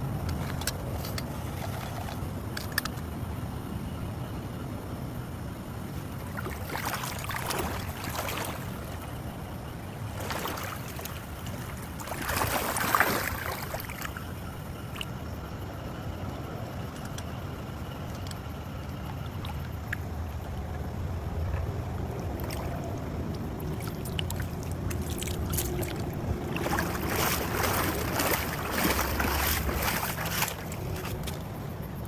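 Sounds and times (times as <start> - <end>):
low motor hum: 0.0 - 32.0
rushing splashing noise: 23.6 - 31.4.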